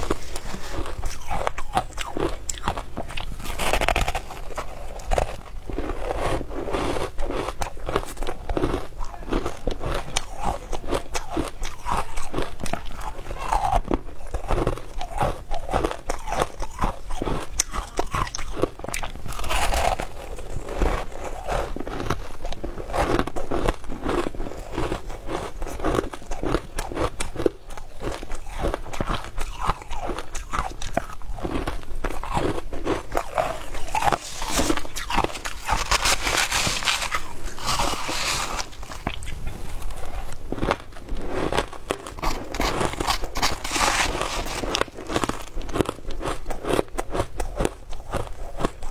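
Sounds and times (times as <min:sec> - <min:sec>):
ice crunching while chewed: 0:00.0 - 0:48.9.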